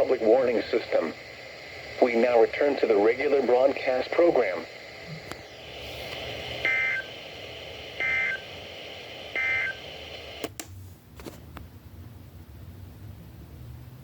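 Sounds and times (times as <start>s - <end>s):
static hiss: 0.0s - 11.4s
digital data tone bursts: 8.0s - 8.4s, 9.3s - 9.8s.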